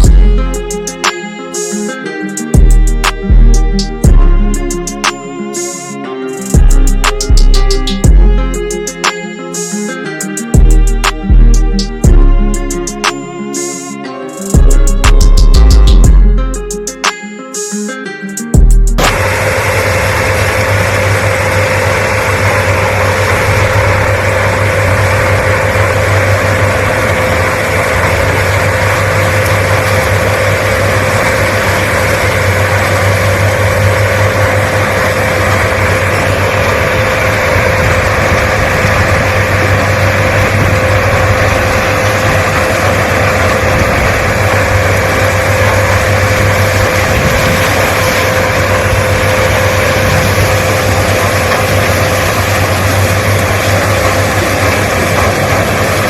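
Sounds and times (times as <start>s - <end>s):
harvester engine running: 0.0s - 17.1s, 18.6s - 56.0s
steady machine whine: 0.0s - 17.1s, 18.4s - 56.0s.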